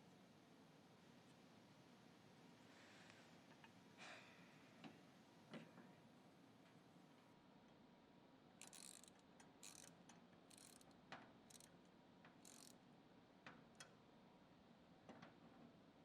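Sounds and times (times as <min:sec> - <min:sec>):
ratchet wrench clicking: 0:08.6 - 0:09.9, 0:10.5 - 0:10.9, 0:11.5 - 0:11.7, 0:12.4 - 0:12.8
small metallic clicks: 0:08.6 - 0:11.7, 0:12.3 - 0:12.8.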